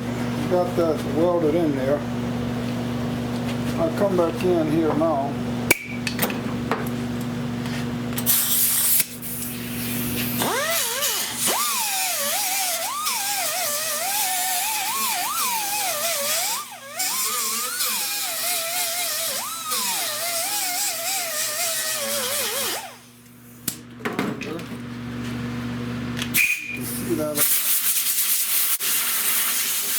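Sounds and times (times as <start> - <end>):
grinder grinding metal: 9.5 - 23.1.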